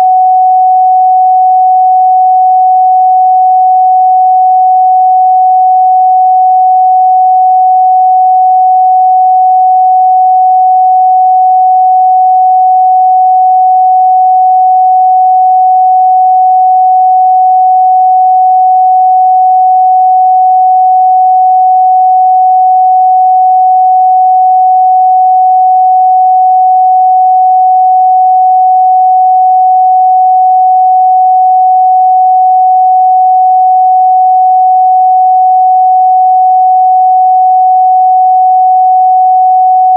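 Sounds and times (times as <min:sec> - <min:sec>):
sine wave test tone: 0:00.0 - 0:39.9.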